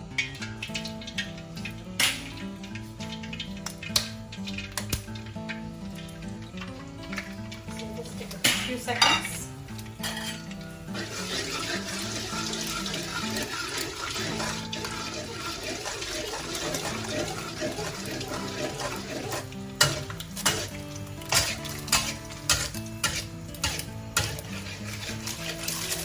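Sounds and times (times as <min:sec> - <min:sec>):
eggs sizzling in hot oil: 0:00.0 - 0:26.0
metal spatula scraping a wok: 0:10.0 - 0:26.0.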